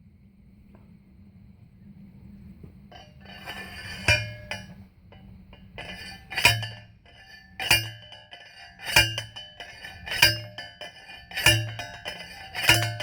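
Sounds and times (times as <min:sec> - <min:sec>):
metal post being pounded: 0:03.0 - 0:13.0.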